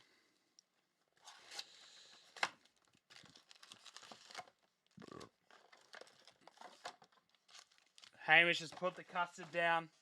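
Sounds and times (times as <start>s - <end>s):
foil wrapper crinkling and tearing: 2.4s - 8.2s.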